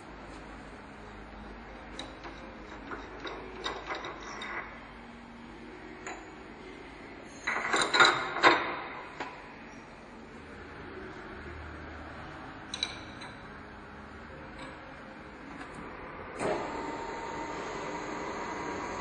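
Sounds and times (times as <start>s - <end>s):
machine clicking and clanking: 1.9s - 4.8s, 7.4s - 9.4s
milling machine hum: 14.1s - 19.0s.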